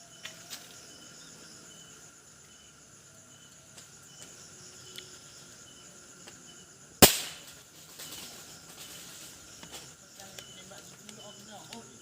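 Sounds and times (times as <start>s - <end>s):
crickets and insects chirping: 0.0s - 12.0s
gunshot: 7.0s - 7.5s.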